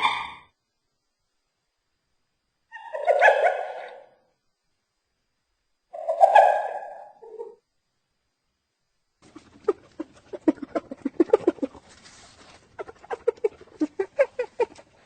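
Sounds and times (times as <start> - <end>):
hyena cackling: 2.7 - 4.2, 9.2 - 15.0.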